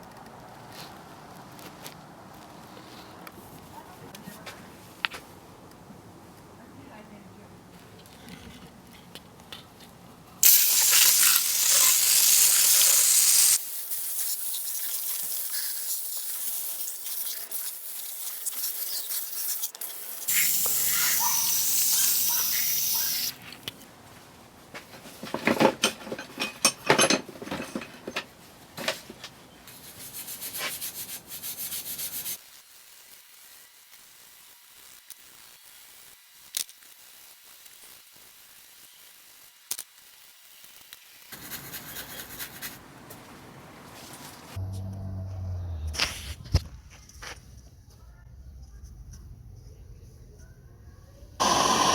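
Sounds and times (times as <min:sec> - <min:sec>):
hissing spray: 0:10.4 - 0:23.4, 0:51.4 - 0:51.9.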